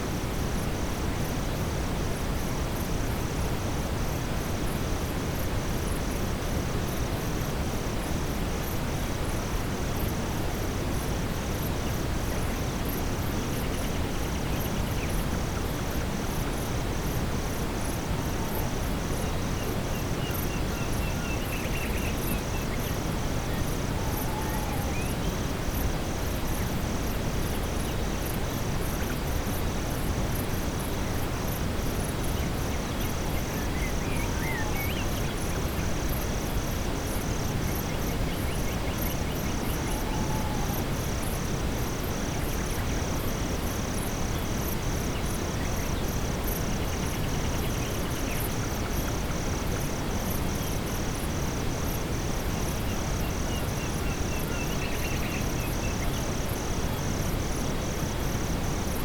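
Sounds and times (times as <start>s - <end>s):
insects chirping: 0.0s - 59.0s
steady brown noise: 0.0s - 59.0s.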